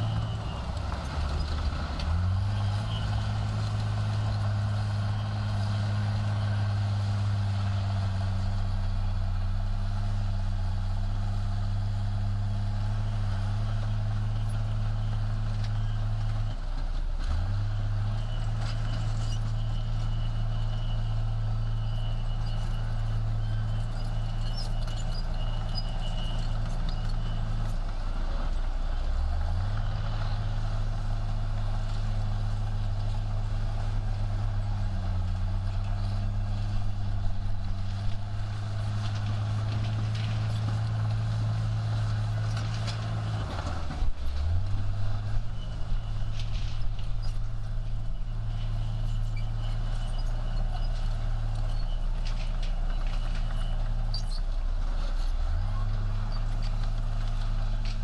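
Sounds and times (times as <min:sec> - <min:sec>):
diesel engine at high revs: 0:00.0 - 0:58.0.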